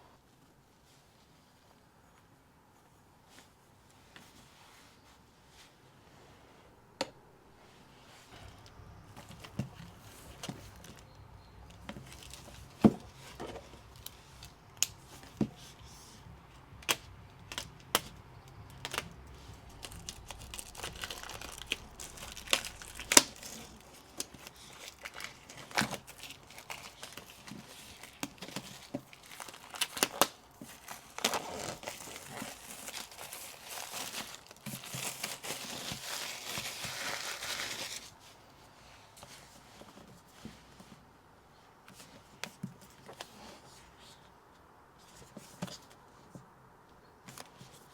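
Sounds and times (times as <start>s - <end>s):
packaging crinkling and tearing: 8.5s - 15.8s, 16.8s - 38.2s.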